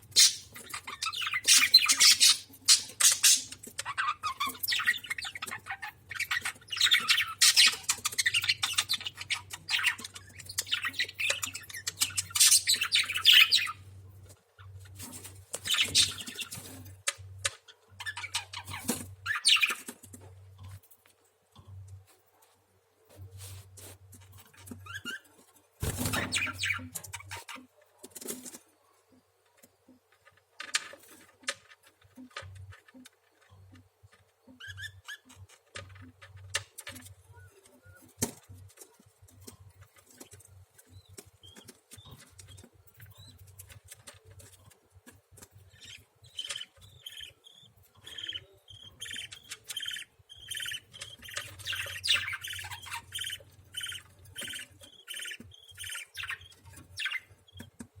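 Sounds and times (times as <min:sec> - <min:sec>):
baby lovebirds chirping: 0:00.1 - 0:13.8, 0:15.6 - 0:16.7, 0:25.8 - 0:27.6, 0:45.6 - 0:57.8.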